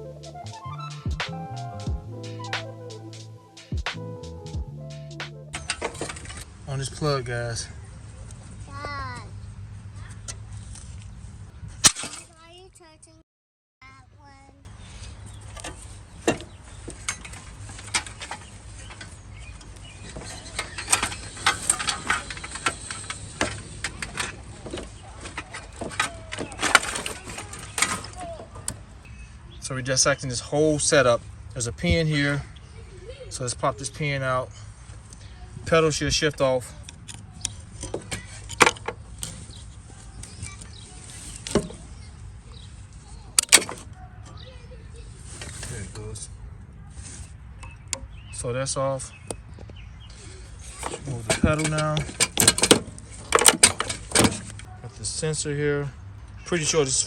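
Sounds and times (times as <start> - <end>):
sharp metal clicks and knocks: 5.5 - 6.5, 15.5 - 28.8, 36.8 - 39.6, 43.4 - 43.9, 50.7 - 54.7.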